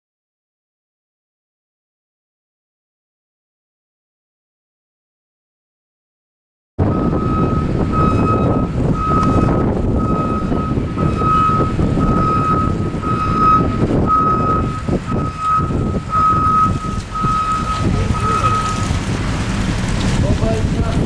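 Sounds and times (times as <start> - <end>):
reversing alarm beeping: 6.8 - 19.0
low engine rumble: 6.8 - 21.0.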